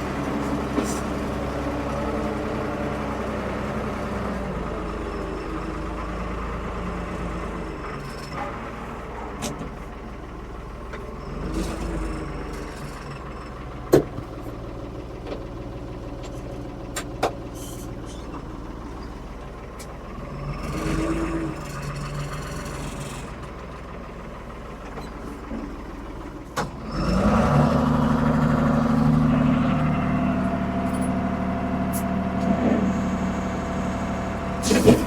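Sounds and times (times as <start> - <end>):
diesel engine revving: 11.1 - 13.8, 20.1 - 23.6, 25.8 - 35.0.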